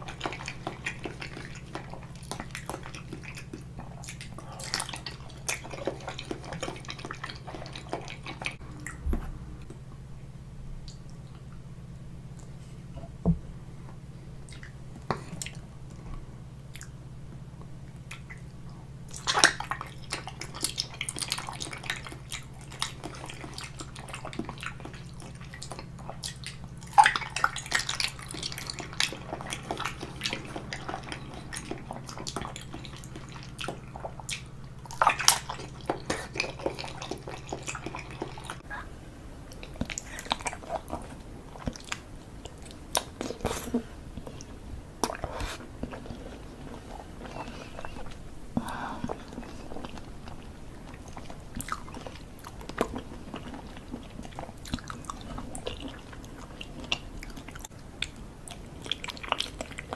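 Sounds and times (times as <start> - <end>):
wet chewing and mouth clicks: 0.0 - 9.8, 14.4 - 16.1, 16.7 - 38.9, 39.5 - 59.9
low hum: 8.2 - 19.1.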